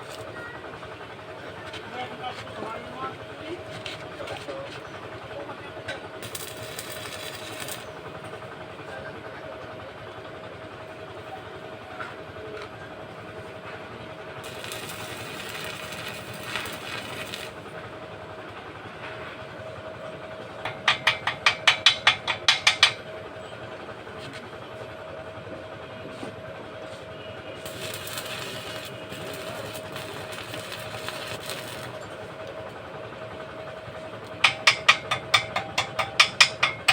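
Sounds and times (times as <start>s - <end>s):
welding arc crackling hiss: 6.2s - 8.0s, 14.4s - 17.7s, 27.6s - 32.0s
welder hum: 6.2s - 8.3s, 14.4s - 17.8s, 27.6s - 32.3s.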